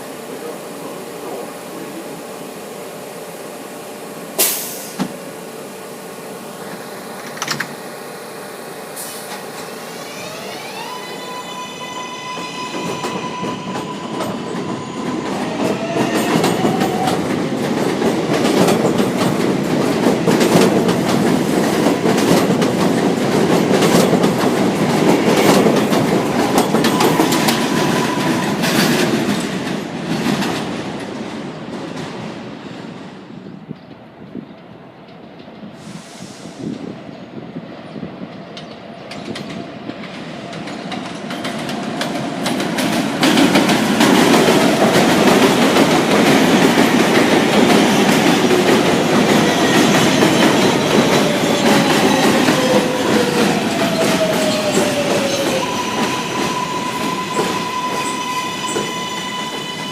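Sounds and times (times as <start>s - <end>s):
train wheels rumbling on rails: 3.7s - 59.9s
train clanking: 11.4s - 35.8s, 37.9s - 59.9s.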